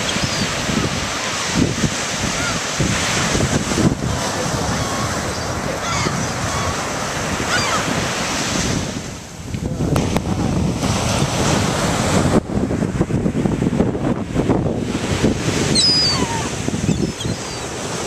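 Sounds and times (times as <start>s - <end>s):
seagull cries: 0.0s - 1.5s, 2.2s - 2.7s, 4.7s - 6.8s, 7.4s - 7.9s, 15.7s - 17.8s
ocean surf breaking: 0.0s - 18.0s
wind buffeting microphone: 0.0s - 18.0s.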